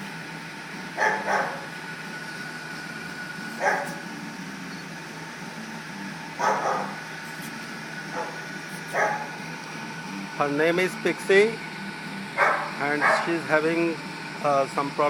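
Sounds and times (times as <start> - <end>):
steady low hum: 0.0 - 15.0
dog barking: 1.0 - 1.6, 3.6 - 4.0, 6.4 - 7.0, 8.1 - 9.3, 12.4 - 13.3.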